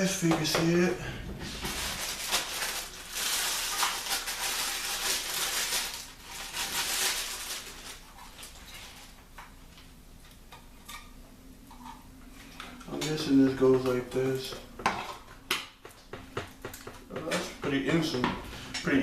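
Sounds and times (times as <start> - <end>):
packaging rustling: 1.4 - 9.3.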